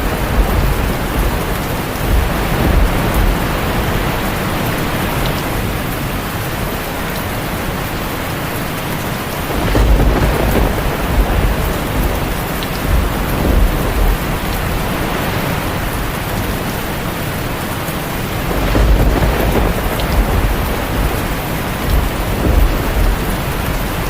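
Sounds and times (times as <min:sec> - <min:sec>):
rolling thunder: 0:00.0 - 0:06.0, 0:09.4 - 0:16.8, 0:18.2 - 0:24.0
heavy rain: 0:00.0 - 0:24.0.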